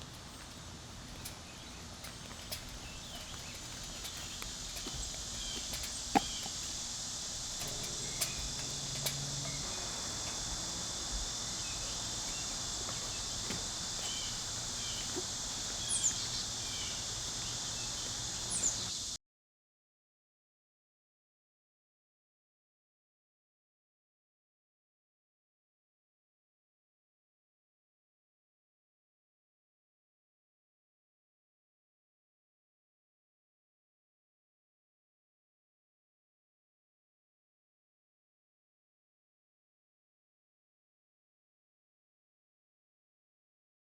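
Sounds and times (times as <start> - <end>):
insect chorus: 0.0 - 19.2
bird chirps: 0.2 - 6.8, 9.4 - 19.0.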